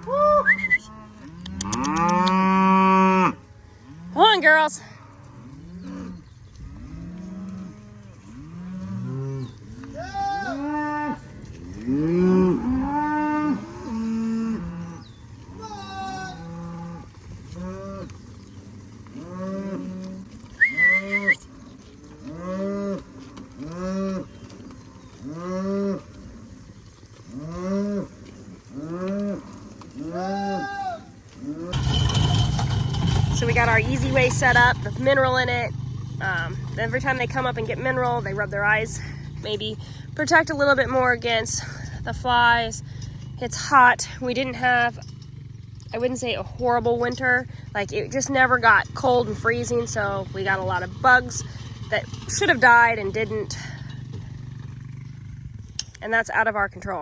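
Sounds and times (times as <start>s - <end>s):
cattle mooing: 0.0s - 44.8s, 46.0s - 54.8s.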